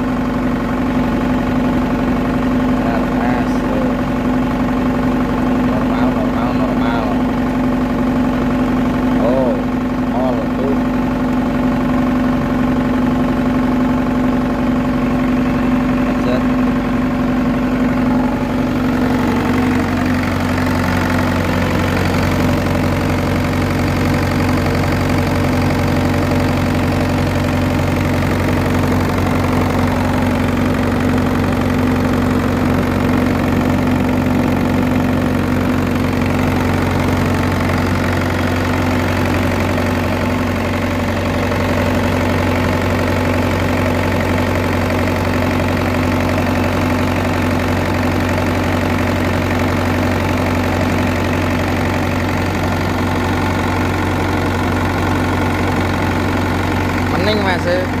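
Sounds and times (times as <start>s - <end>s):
generator engine running: 0.0s - 58.0s.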